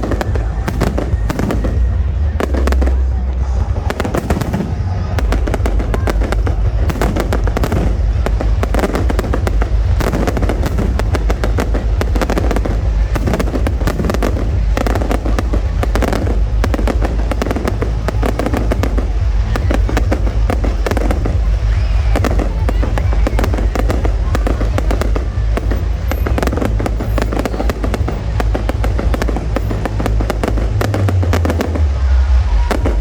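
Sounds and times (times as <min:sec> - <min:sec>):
fireworks bangs and crackles: 0:00.0 - 0:33.0
heavy low rumble: 0:00.0 - 0:33.0.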